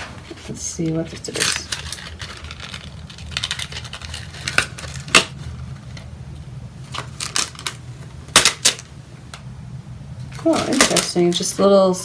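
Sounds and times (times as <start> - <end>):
low steady hum: 0.0 - 12.0
package crinkling and clicking: 1.3 - 6.1, 6.9 - 9.5.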